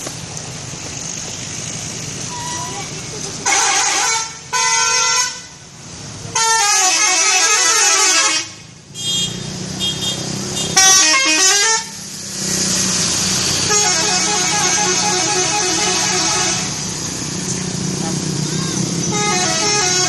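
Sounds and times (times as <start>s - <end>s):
musical bus horn tunes: 3.4s - 5.6s, 6.3s - 12.0s, 13.6s - 16.8s, 19.0s - 20.0s.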